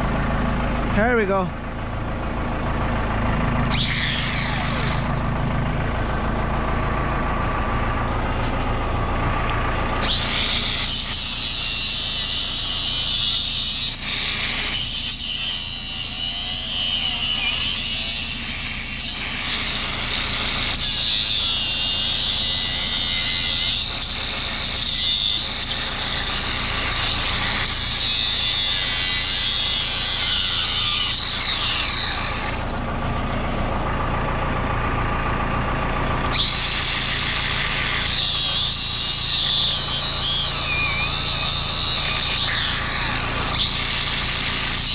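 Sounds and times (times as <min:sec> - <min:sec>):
diesel engine under load: 0:00.0 - 0:44.9
harsh high-pitched grating: 0:03.7 - 0:05.2, 0:10.0 - 0:32.7, 0:36.2 - 0:44.9.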